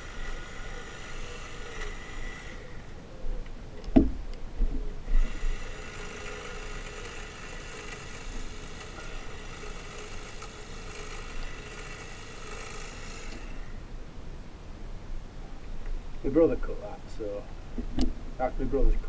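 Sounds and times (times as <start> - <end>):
hedge trimmer running: 0.0 - 3.0, 5.0 - 13.9.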